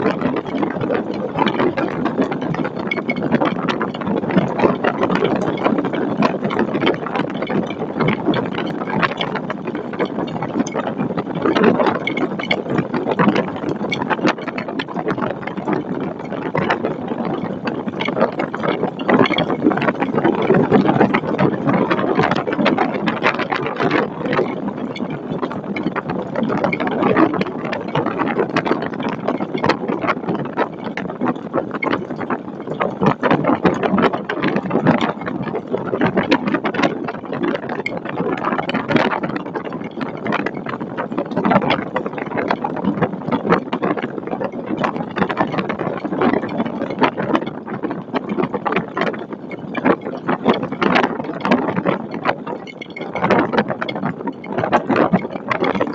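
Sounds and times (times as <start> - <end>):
crackle of rattling clicks: 0.0 - 32.0
storm wind buffeting microphone: 0.0 - 55.9.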